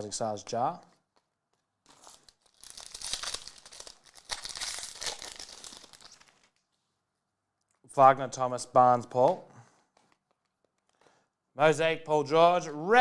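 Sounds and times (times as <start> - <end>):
foil wrapper tearing and crinkling: 1.9 - 6.6.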